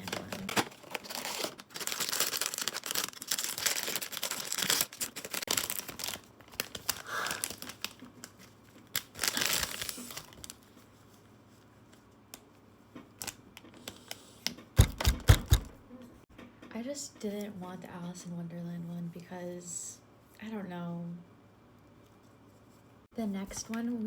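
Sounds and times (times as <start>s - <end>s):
packaging crinkling and tearing: 0.0s - 10.9s.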